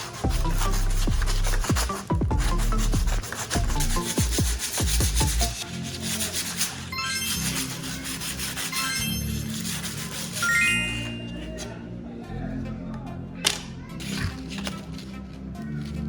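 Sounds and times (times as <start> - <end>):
scratchy sanding on hard surface: 0.0 - 11.6
electronic background music: 0.0 - 16.0.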